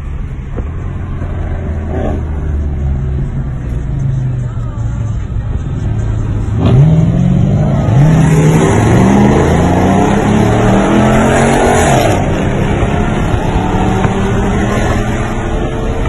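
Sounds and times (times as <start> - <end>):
car engine accelerating: 5.6 - 16.0.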